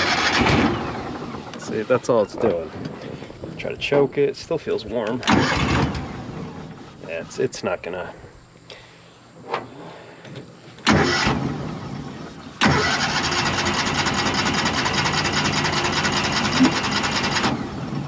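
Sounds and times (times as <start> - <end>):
engine cranking on starter: 0.0 - 2.6, 5.1 - 7.2, 10.8 - 18.0.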